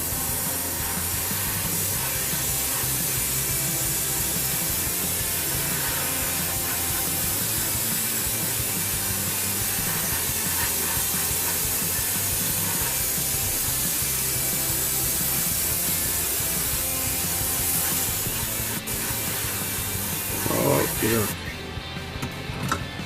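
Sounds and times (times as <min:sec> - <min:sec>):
airbrush spraying hiss: 0:00.0 - 0:21.4
background music: 0:00.0 - 0:23.0.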